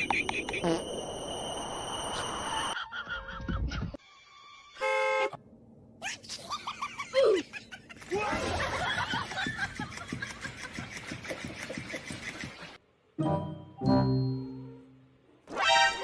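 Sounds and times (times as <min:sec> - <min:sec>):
people laughing: 0:06.3 - 0:12.7.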